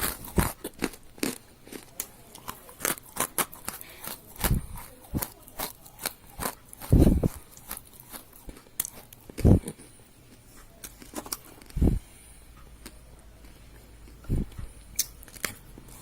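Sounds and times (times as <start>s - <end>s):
deep clay crunches: 0.0s - 1.8s, 2.4s - 9.8s
dry clay crackling: 0.0s - 12.0s.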